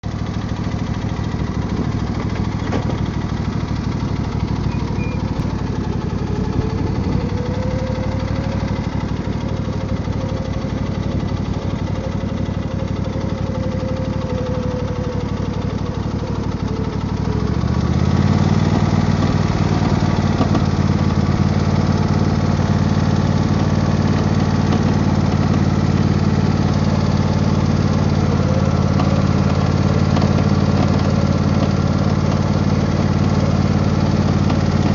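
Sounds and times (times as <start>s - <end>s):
riding mower engine revving: 0.0s - 34.9s
rattling noise: 0.7s - 19.0s.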